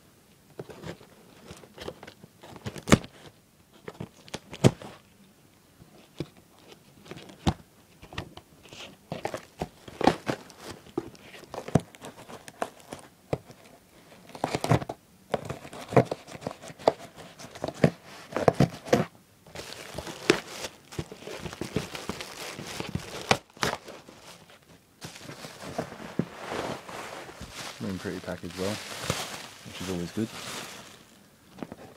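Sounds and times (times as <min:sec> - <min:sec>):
packaging tearing and crinkling: 0:15.4 - 0:31.2.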